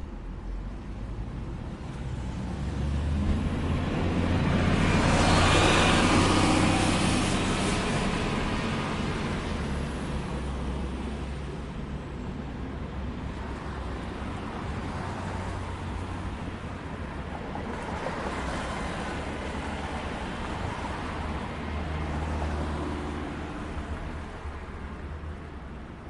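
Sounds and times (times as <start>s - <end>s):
road noise: 0.0s - 26.0s
vehicle passing: 2.0s - 10.6s.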